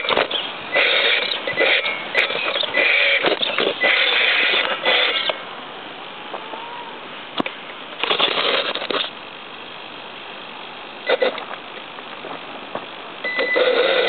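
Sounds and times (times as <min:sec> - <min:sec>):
electric motor and gearbox running: 0:00.0 - 0:05.4, 0:08.0 - 0:09.2, 0:11.0 - 0:14.0.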